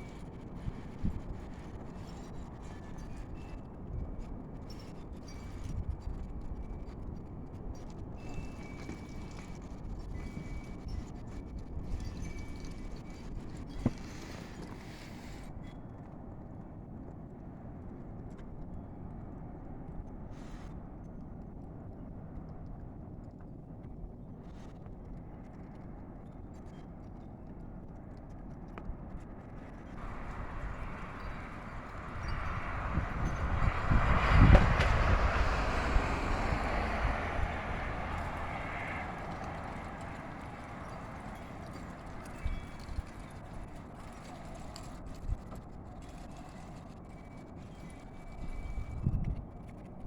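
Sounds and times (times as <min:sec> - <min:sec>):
strong wind rumbling: 0:29.8 - 0:46.2
hissing wind gust: 0:30.0 - 0:43.4.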